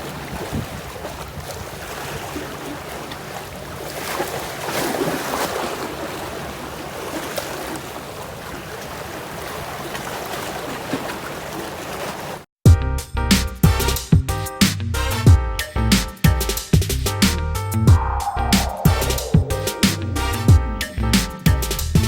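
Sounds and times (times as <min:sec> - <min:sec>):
wind buffeting microphone: 0:00.0 - 0:03.0, 0:17.9 - 0:21.1
sea waves washing against shore: 0:00.0 - 0:12.5.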